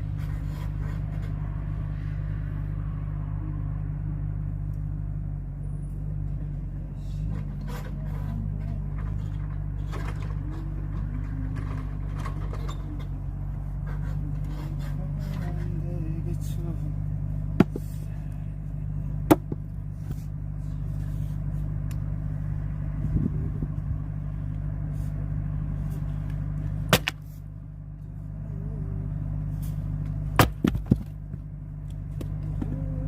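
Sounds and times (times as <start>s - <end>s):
engine running steadily: 0.0s - 33.0s
wood cracking as it splits: 26.9s - 27.2s.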